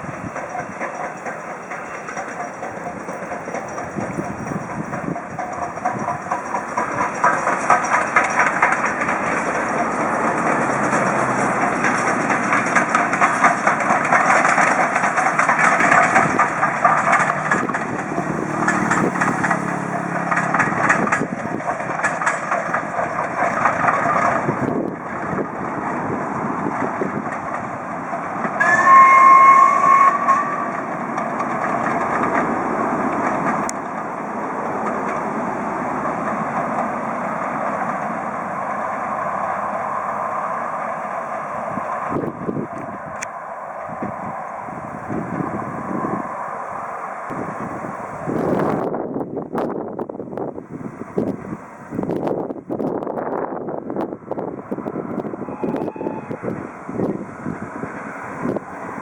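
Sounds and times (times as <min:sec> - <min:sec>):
train wheel clatter on rails: 0:00.0 - 0:59.0
train whistle: 0:28.6 - 0:30.9, 0:55.4 - 0:56.7.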